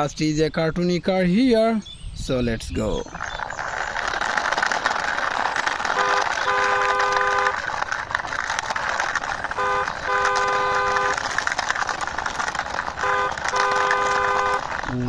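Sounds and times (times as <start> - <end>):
toy car wheels rolling: 2.4 - 15.0
two-tone toy car horn: 6.0 - 7.6, 9.6 - 11.2, 13.0 - 14.8.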